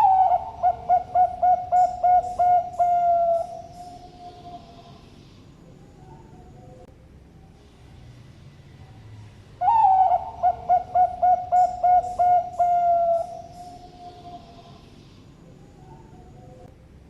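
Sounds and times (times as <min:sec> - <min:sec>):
dove cooing: 0:00.0 - 0:05.0, 0:09.6 - 0:14.8.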